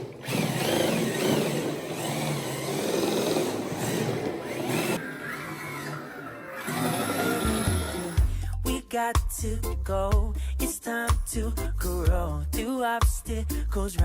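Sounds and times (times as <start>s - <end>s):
electric motor whining: 0.0s - 8.3s.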